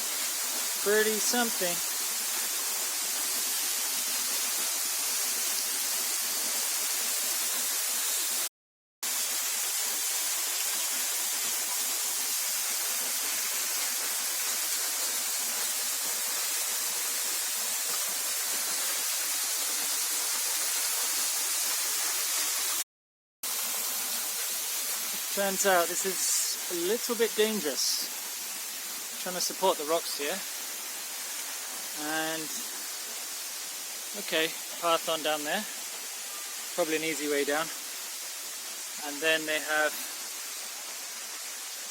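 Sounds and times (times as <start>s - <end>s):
waterfall rushing: 0.0s - 3.5s, 24.1s - 28.1s, 29.1s - 32.8s, 33.6s - 41.9s.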